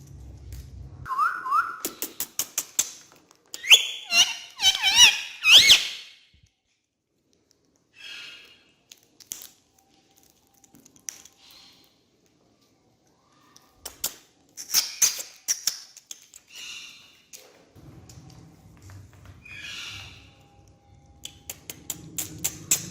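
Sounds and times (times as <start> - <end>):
parrot squeaky calls: 3.6 - 6.2, 19.4 - 20.3.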